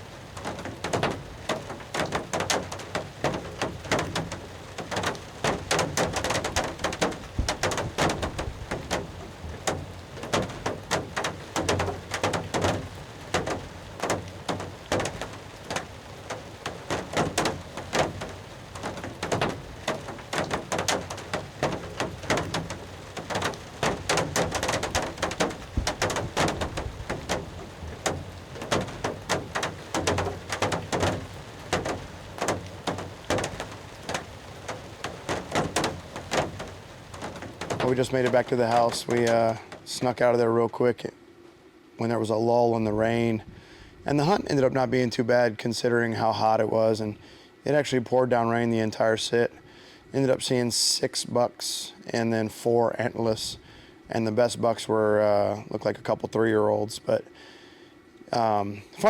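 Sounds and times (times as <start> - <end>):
heavy rain drumming: 0.0 - 41.1, 42.0 - 47.0, 58.4 - 59.0.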